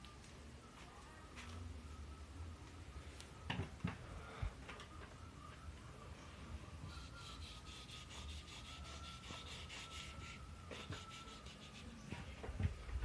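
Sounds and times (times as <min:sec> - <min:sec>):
faint high whine: 0:00.0 - 0:13.0
painting tool rubbing on wall: 0:06.9 - 0:12.1.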